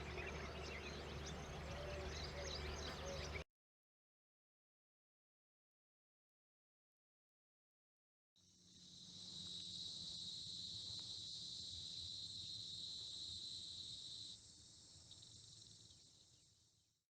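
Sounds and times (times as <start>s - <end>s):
insect chorus: 8.4s - 17.0s.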